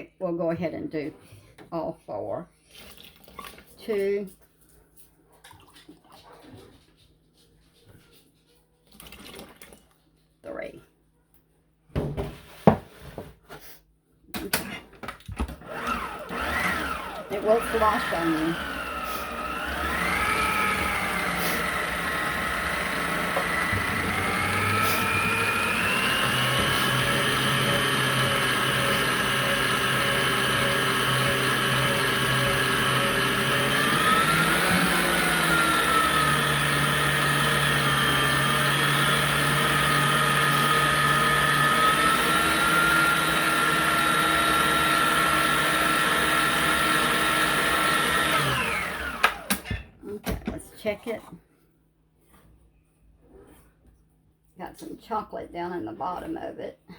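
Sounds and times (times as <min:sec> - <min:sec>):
stand mixer motor whine: 0:15.4 - 0:49.6.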